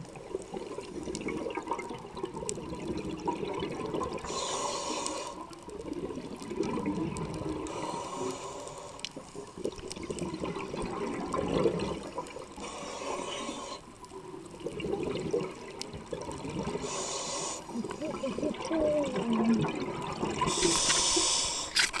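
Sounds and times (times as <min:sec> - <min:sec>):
exhale bubbling underwater: 0:00.0 - 0:21.5
regulator inhale hiss: 0:04.2 - 0:05.5, 0:07.6 - 0:09.3, 0:12.6 - 0:13.9, 0:16.8 - 0:17.9, 0:20.4 - 0:21.9
muffled vocal noises: 0:17.7 - 0:19.9.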